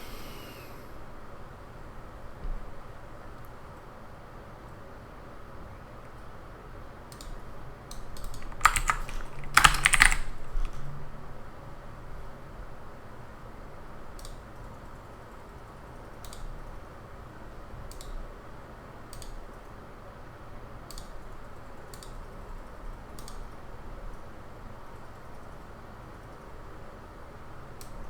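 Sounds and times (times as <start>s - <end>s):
low background noise: 0.0s - 28.0s
computer mouse clicking: 7.1s - 10.8s, 16.2s - 16.5s, 17.9s - 18.2s, 19.1s - 19.4s, 20.9s - 21.2s, 21.9s - 22.2s, 23.2s - 23.4s.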